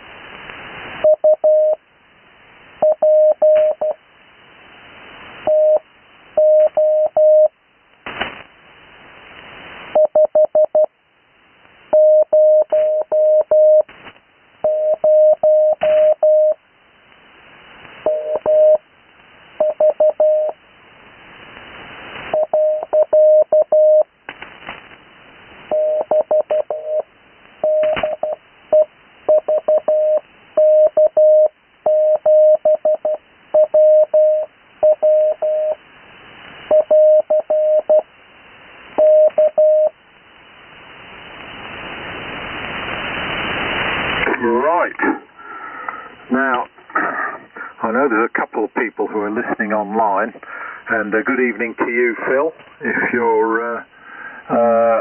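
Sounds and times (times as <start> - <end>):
morse code tone: 1.0 - 1.8, 2.8 - 4.0, 12.0 - 13.9, 14.6 - 16.6, 18.1 - 18.8, 19.6 - 20.6, 22.3 - 24.1, 25.7 - 35.8, 36.7 - 38.0
radio band hiss: 7.9 - 23.3, 40.1 - 55.0.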